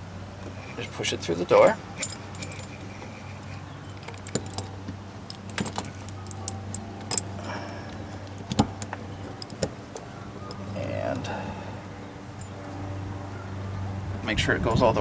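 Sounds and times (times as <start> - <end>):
metallic lock clicks and rattles: 1.5 - 10.8.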